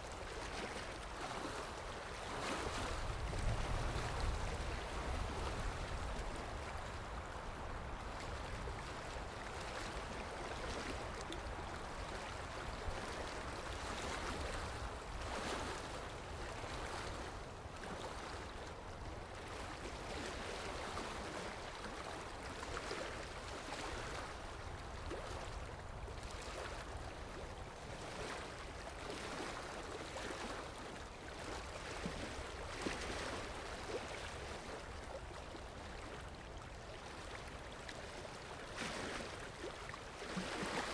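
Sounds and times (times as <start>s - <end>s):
wind rumble on microphone: 1.3s - 17.6s.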